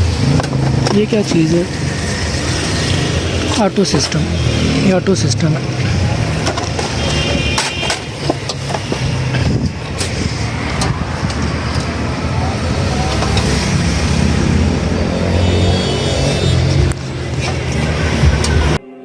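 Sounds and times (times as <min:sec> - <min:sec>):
traffic and engine noise: 0:00.0 - 0:18.8
sharp clicks and knocks: 0:05.6 - 0:12.0.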